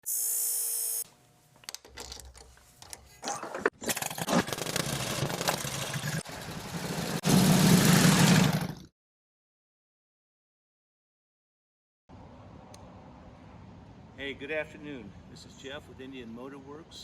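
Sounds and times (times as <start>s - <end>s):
motorcycle engine starting and running: 3.3s - 8.9s.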